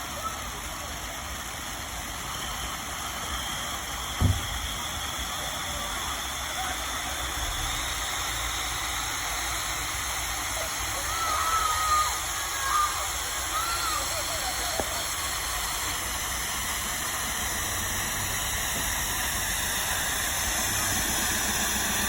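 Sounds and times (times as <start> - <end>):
fireworks hissing: 0.0 - 22.0
faint rising whistle: 2.1 - 14.8
firework low thump: 4.2 - 4.8.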